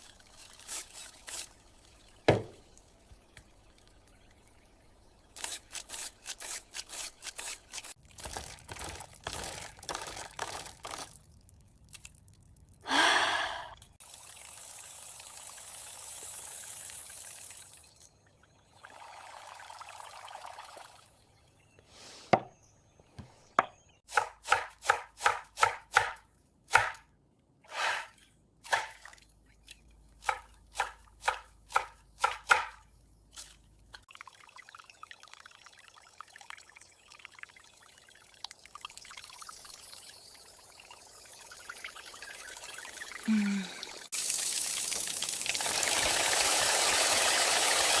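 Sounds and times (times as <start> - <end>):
knife chopping on cutting board: 2.3 - 2.6, 24.1 - 27.0, 30.2 - 32.8
liquid pouring: 34.1 - 40.1, 41.3 - 48.0.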